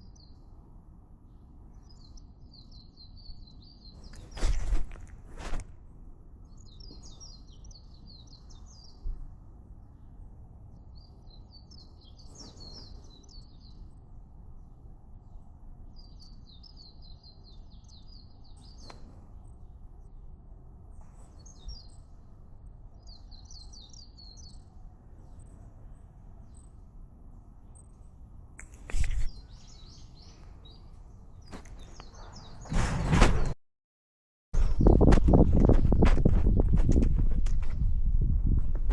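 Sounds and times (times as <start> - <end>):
songbird twittering: 16.0 - 19.1, 22.9 - 26.8, 27.7 - 32.7.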